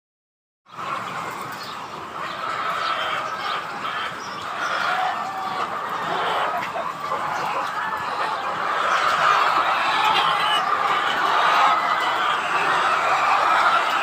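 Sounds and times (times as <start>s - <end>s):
chickens clucking and chirping: 0.7s - 14.0s.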